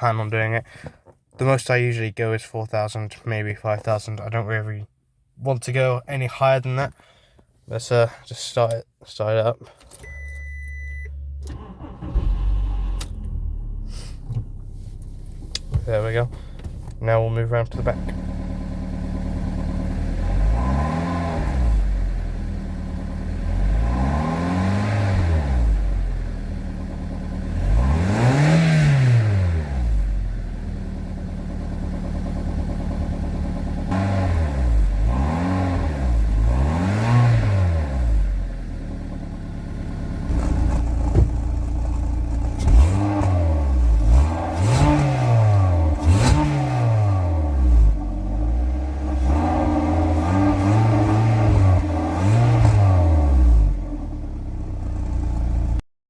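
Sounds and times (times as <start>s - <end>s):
car engine revving: 11.2s - 55.3s.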